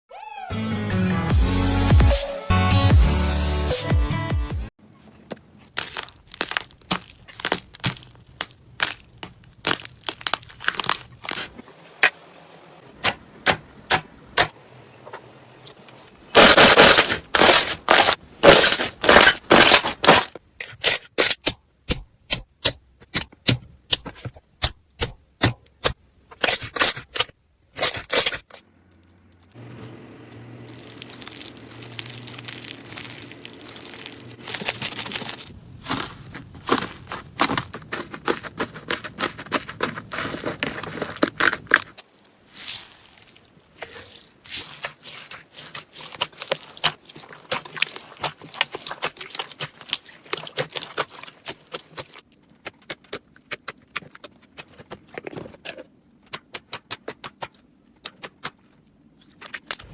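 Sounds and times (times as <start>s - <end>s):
slime squishing: 5.0s - 11.6s, 16.3s - 20.3s, 30.6s - 55.2s
slime popping and crackling: 5.7s - 11.5s, 16.4s - 20.3s, 30.6s - 54.0s.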